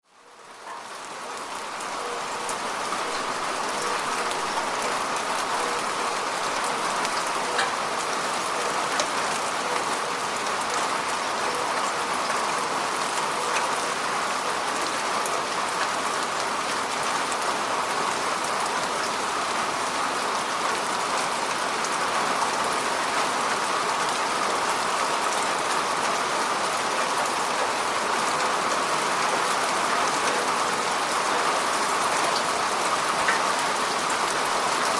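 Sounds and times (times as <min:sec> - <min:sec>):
rain falling on lake: 0:00.0 - 0:34.9.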